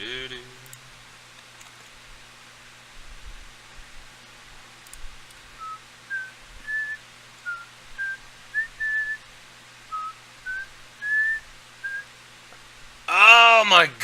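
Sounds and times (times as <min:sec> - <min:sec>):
person whistling a tune: 0:05.6 - 0:09.2, 0:09.9 - 0:12.0.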